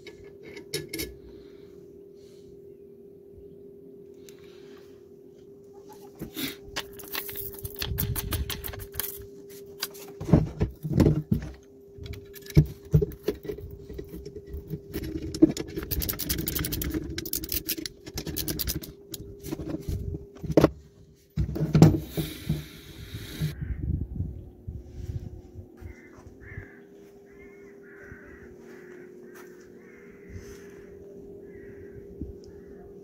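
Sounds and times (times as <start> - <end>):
tools and metal parts clinking: 0.0 - 1.2, 6.6 - 20.7
faint steady hum: 0.0 - 33.0.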